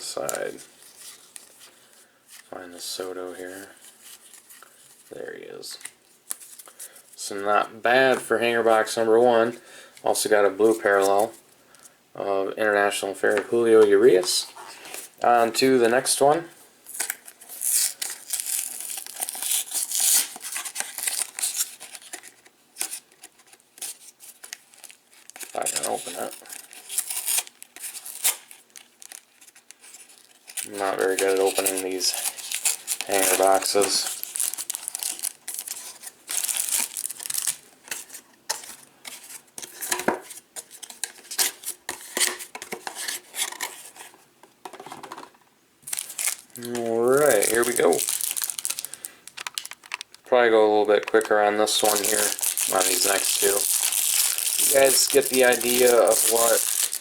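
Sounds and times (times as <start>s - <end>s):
packaging crinkling and tearing: 16.9s - 39.9s, 45.8s - 50.2s, 50.9s - 57.0s.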